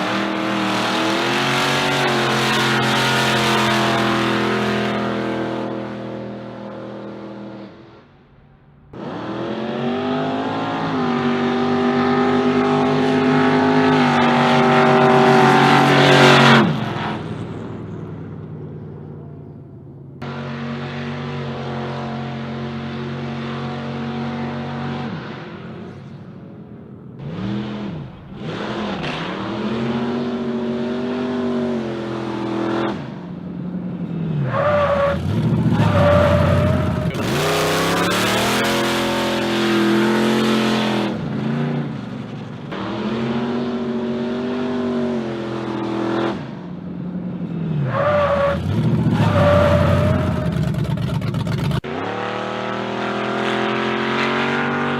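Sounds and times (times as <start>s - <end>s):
car engine revving: 0.0s - 54.9s
tyre squeal: 34.5s - 38.6s, 47.9s - 51.3s.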